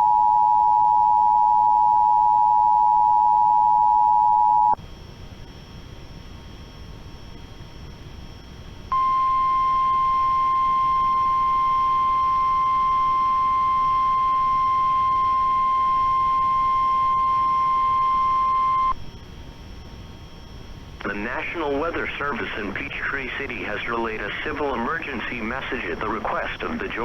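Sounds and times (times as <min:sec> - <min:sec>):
steady warning alarm tone: 0:00.0 - 0:04.8, 0:08.9 - 0:19.0
faint hiss: 0:19.0 - 0:27.0.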